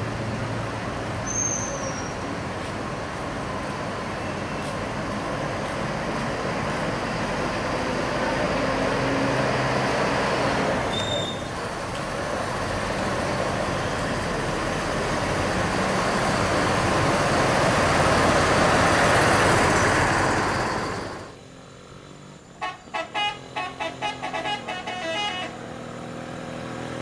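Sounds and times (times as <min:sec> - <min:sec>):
bus engine and road noise: 0:00.0 - 0:27.0
high-pitched bus horn toots: 0:22.5 - 0:25.9.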